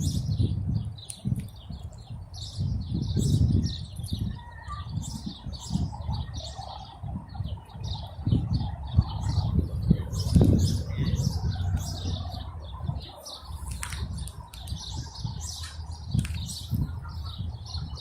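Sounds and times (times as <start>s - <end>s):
small birds chirping: 0.0s - 18.0s
low rumble: 8.3s - 18.0s.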